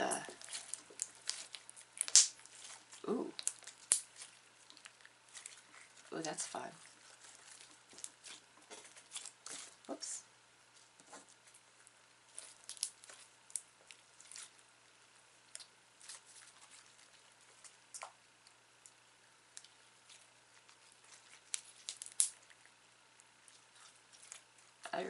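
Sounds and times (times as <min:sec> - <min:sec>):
slime squelching: 0:00.0 - 0:25.0
slime crackling pops: 0:00.1 - 0:05.6, 0:21.4 - 0:22.4.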